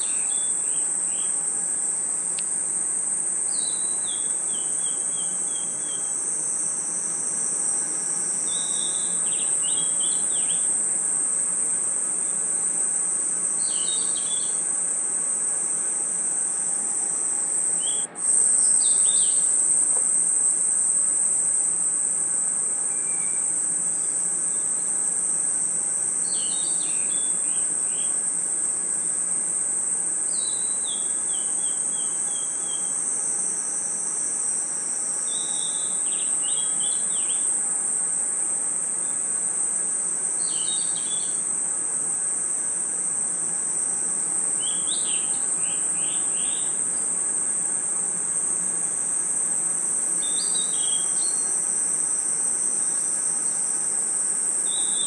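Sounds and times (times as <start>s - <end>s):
crickets trilling: 0.0s - 55.0s
bird chirps: 13.6s - 14.6s.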